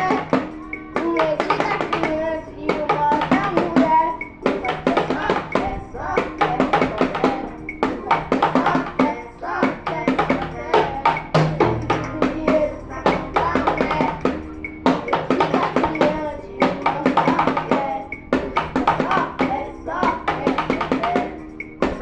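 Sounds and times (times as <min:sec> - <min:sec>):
drum kit playing: 0:00.0 - 0:22.0
recorded forro song: 0:00.0 - 0:22.0.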